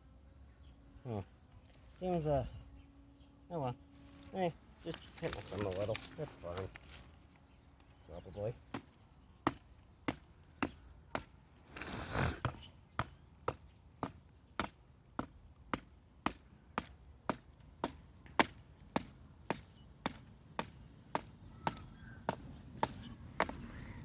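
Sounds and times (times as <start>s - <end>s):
hatchet chopping tree limbs: 4.9s - 7.2s, 8.7s - 11.8s, 12.4s - 24.0s.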